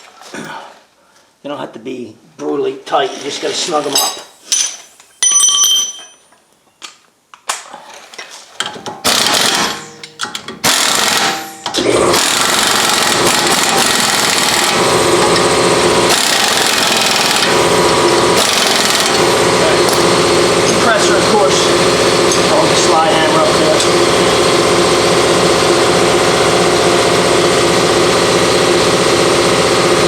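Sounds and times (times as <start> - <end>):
air impact wrench bursts: 9.0 - 29.6
air compressor running: 9.0 - 30.0.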